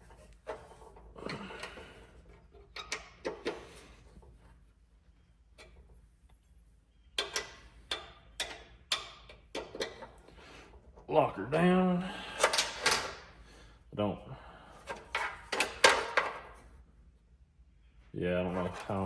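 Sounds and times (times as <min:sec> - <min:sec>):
metal parts clicking: 0:12.3 - 0:13.2, 0:18.5 - 0:19.0.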